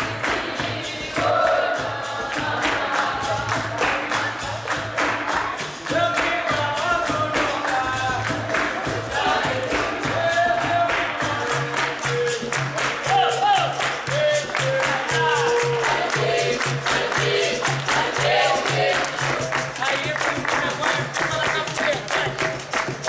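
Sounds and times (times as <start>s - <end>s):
group of voices singing: 0.0s - 23.0s
percussion steady beat: 0.0s - 23.0s.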